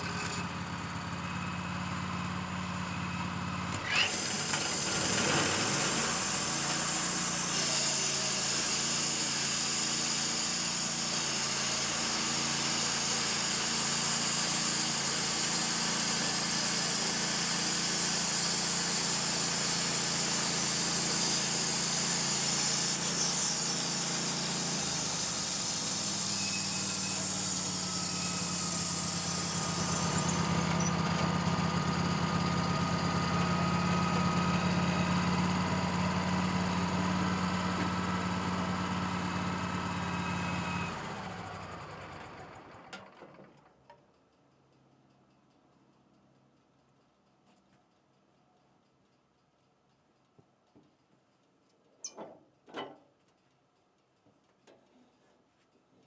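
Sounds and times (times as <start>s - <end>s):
band sawmill sawing log: 0.0s - 1.0s, 3.6s - 42.6s.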